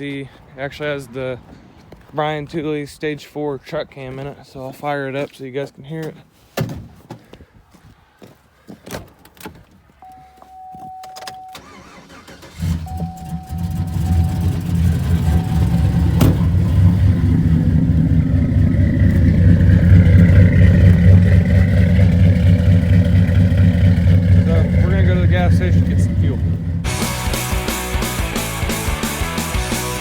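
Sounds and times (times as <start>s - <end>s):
truck engine cranking and idling: 9.1s - 30.0s
electronic chime tone: 10.0s - 11.6s, 12.8s - 16.2s.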